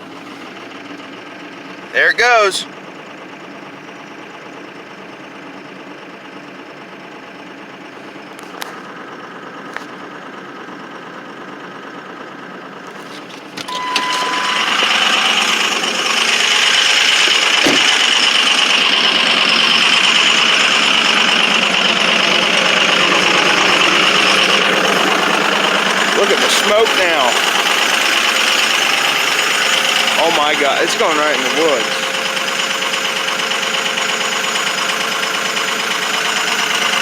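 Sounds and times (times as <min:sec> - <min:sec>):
diesel engine running with misfires: 0:00.0 - 0:37.0
short beep: 0:13.7 - 0:16.0.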